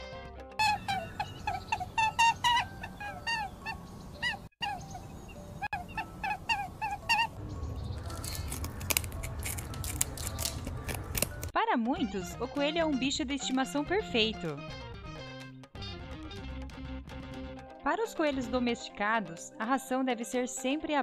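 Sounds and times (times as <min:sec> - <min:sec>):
shrill rabbit squeaks: 0:00.6 - 0:07.4
low rumble: 0:07.3 - 0:08.4.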